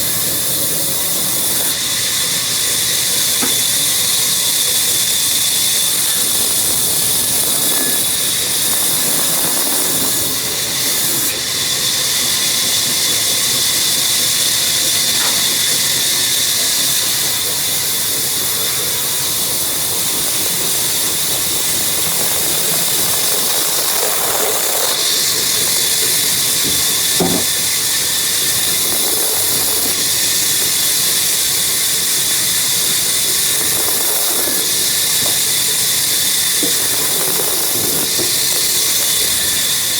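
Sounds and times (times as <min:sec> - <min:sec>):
power saw cutting wood: 0:00.0 - 0:39.9
small knocks: 0:03.4 - 0:03.8, 0:26.6 - 0:27.7.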